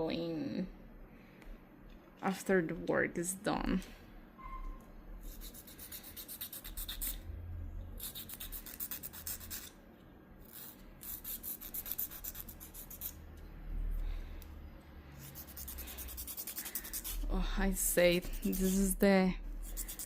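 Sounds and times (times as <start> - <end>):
nail file rasping on fingernail: 5.2 - 7.2, 8.0 - 9.8, 10.4 - 13.2, 15.2 - 17.4, 18.0 - 19.0, 19.6 - 20.0.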